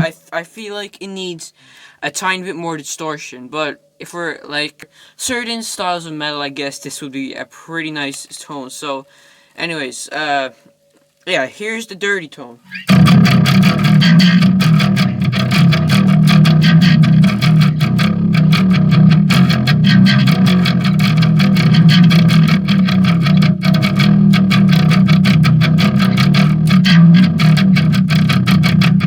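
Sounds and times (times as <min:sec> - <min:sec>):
distorted electric bass notes: 0:12.7 - 0:29.0.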